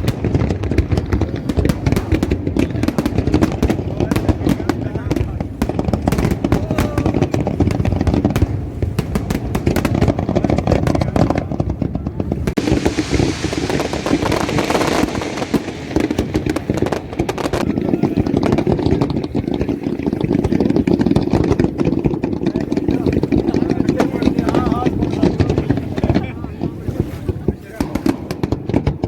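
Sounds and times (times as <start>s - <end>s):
fireworks crackling and popping: 0.0s - 29.0s
low rumble: 11.5s - 19.6s.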